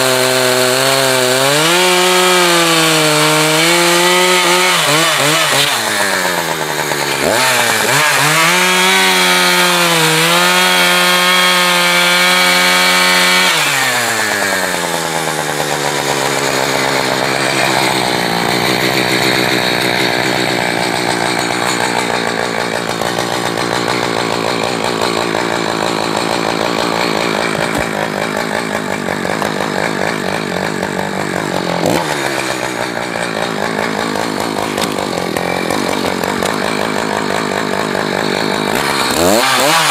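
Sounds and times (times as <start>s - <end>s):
chainsaw cutting firewood: 0.0s - 39.9s.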